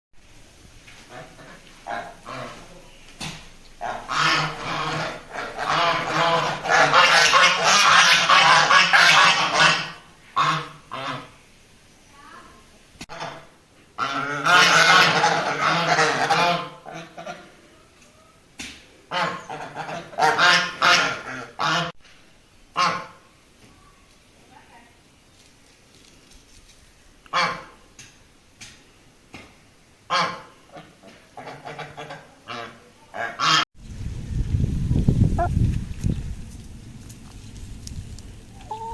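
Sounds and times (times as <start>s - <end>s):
ducks quacking: 1.1s - 2.9s, 3.8s - 11.4s, 13.1s - 17.6s, 19.1s - 21.9s, 30.1s - 34.0s, 34.9s - 38.9s
waterfowl flock calling: 3.8s - 11.3s, 33.4s - 38.9s.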